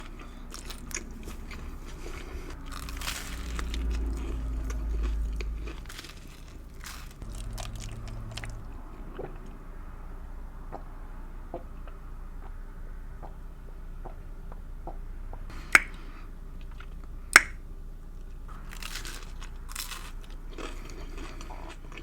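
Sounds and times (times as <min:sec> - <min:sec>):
crunchy bites: 0:00.0 - 0:09.6, 0:15.5 - 0:17.6, 0:18.3 - 0:22.0
person chewing food: 0:00.0 - 0:09.7, 0:15.5 - 0:22.0.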